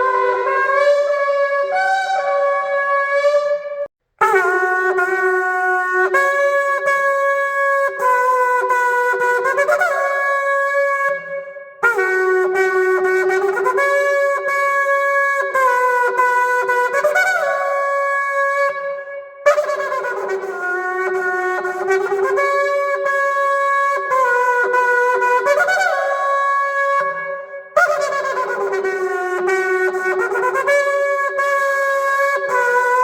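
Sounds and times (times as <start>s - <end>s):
shofar blasts: 0.0s - 11.0s.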